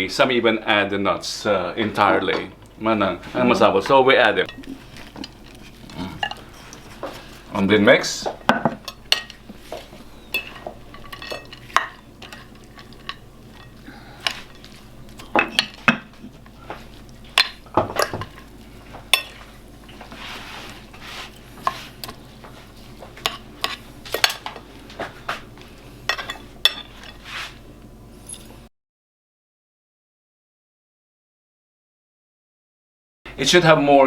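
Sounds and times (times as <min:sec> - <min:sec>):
utensils knocking in a mortar: 0:08.3 - 0:16.1.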